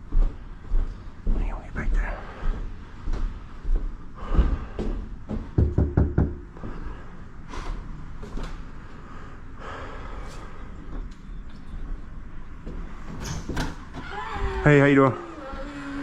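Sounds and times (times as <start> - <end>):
heavy breathing: 1.5 - 3.1, 4.0 - 5.3, 6.5 - 11.1
knocking on a door: 5.4 - 6.5.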